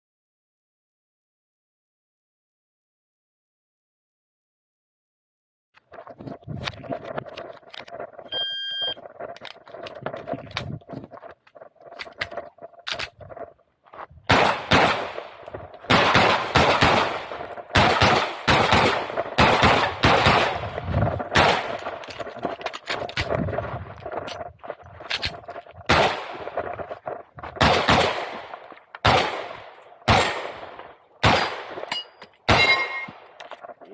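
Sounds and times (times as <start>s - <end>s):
shot timer beep: 8.3s - 9.0s
rapid pistol shots: 14.3s - 22.0s, 25.9s - 26.6s, 27.6s - 33.4s.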